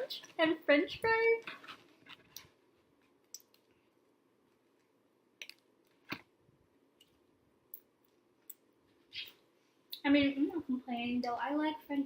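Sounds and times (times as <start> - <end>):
wet mouth clicks: 3.3 - 3.6.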